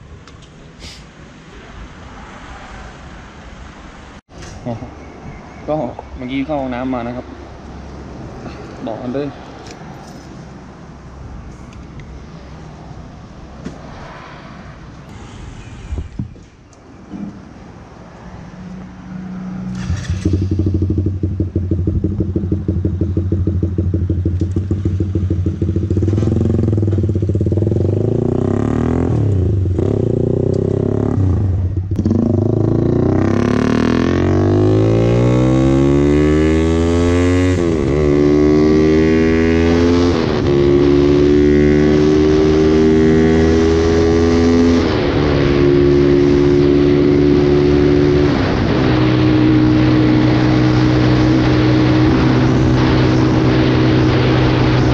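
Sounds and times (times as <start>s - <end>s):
motorcycle engine accelerating: 19.4s - 54.9s.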